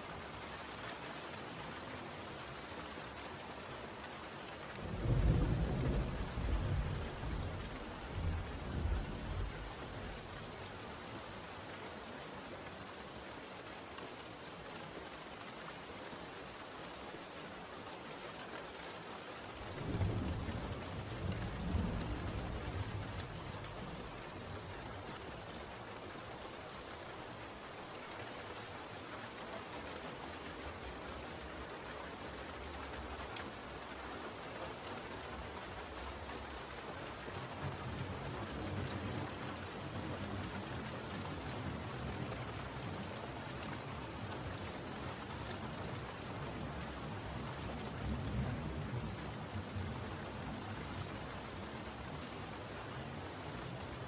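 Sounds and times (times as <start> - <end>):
steady rain falling: 0.0 - 54.0
thunder rumbling: 19.6 - 24.3.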